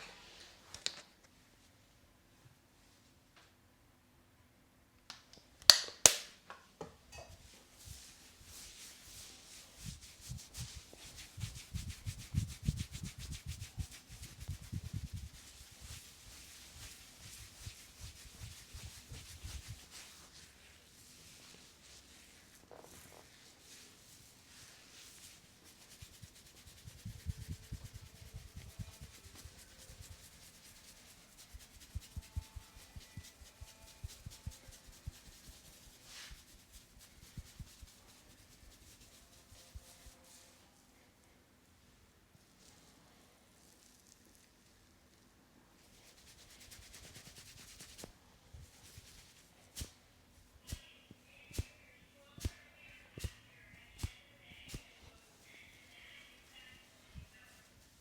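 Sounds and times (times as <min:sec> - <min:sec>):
hands rubbing and patting head: 0:07.8 - 0:40.6, 0:45.9 - 0:50.0, 0:50.6 - 0:55.2.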